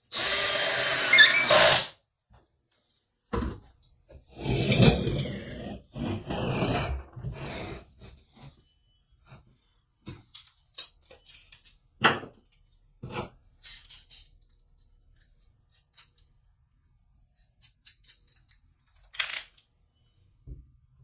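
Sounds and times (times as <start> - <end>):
loud scraping rasping: 0.2 - 1.9.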